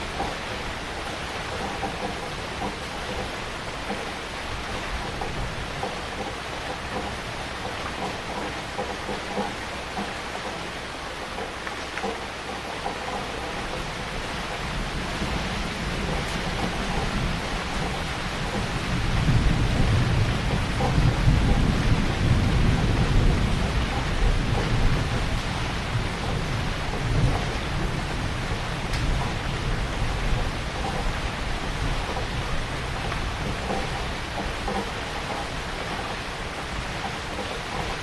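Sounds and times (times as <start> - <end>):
heavy rain falling: 0.0 - 38.0
low rumble of thunder: 13.1 - 38.0.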